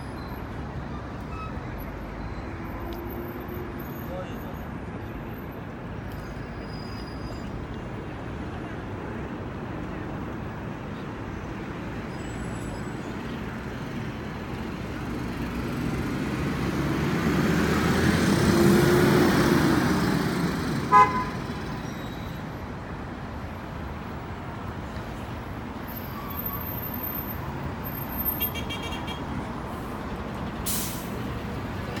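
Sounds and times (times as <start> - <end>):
city road traffic: 0.0 - 32.0
car horn toot: 20.9 - 21.6.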